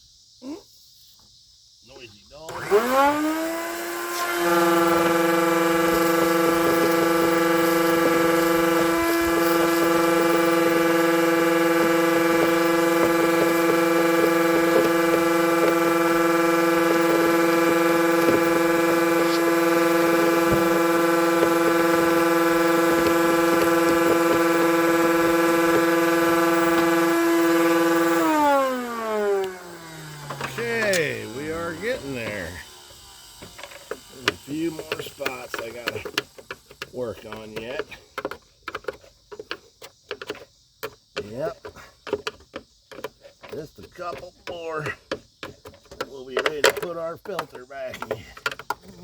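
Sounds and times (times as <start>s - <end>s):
shop vacuum motor whining: 2.4s - 38.3s.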